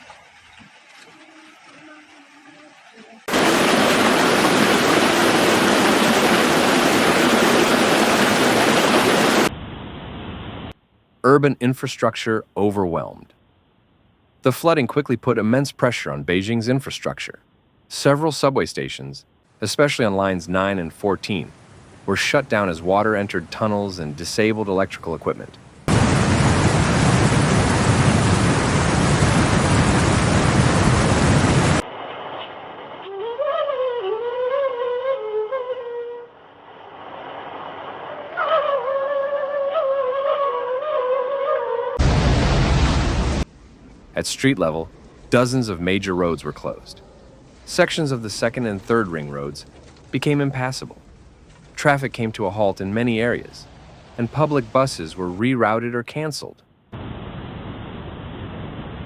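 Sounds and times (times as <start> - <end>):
floodwater rushing: 0.0 - 9.5, 19.8 - 33.4, 42.0 - 55.7.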